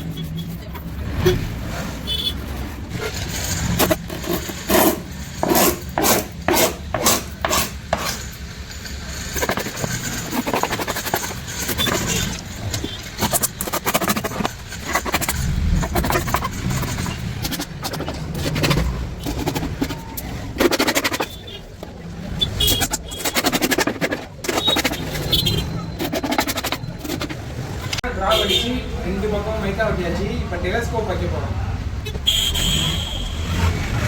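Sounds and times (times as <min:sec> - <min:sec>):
rubbing noise: 0:00.0 - 0:06.1, 0:09.3 - 0:21.6, 0:22.4 - 0:27.4
scraping strokes on wood: 0:01.9 - 0:27.4.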